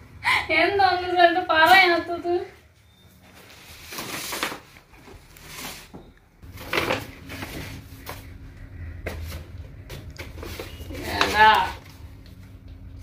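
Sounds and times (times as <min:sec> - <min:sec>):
objects rustling: 0:03.1 - 0:08.4, 0:09.0 - 0:12.6.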